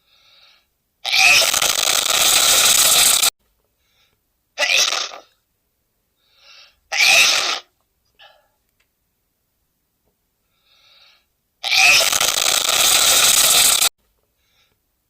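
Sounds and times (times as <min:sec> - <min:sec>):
man sneezing: 0:07.0 - 0:07.7.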